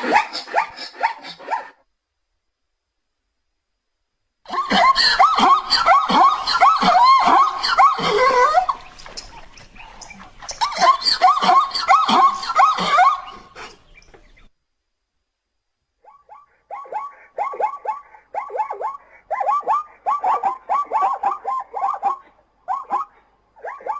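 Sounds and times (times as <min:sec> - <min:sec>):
zebra barking: 0:04.5 - 0:13.9.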